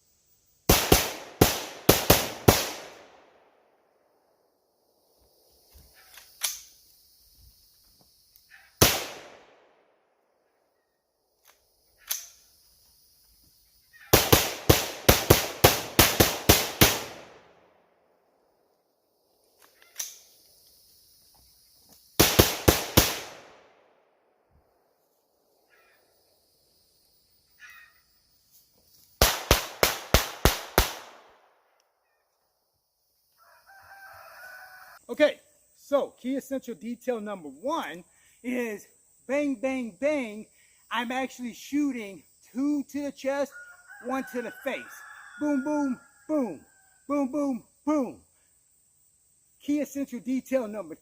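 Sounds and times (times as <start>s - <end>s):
rifle gunshots: 0.7s - 3.5s, 8.8s - 9.6s, 14.1s - 17.5s, 22.2s - 23.8s, 29.2s - 31.5s.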